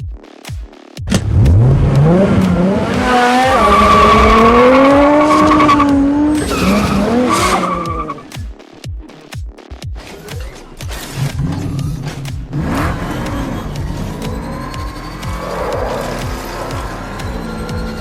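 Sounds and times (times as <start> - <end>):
car engine revving: 1.1 - 8.4, 10.8 - 18.0
tyre squeal: 2.8 - 8.4, 11.9 - 18.0.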